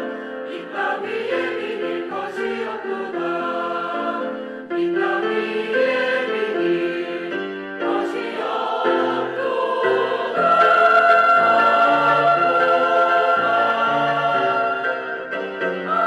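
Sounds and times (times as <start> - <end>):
church choir singing: 0.0 - 16.0.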